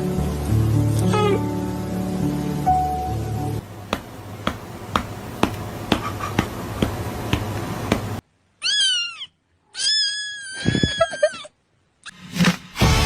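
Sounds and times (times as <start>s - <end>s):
cat meowing: 8.6s - 11.4s.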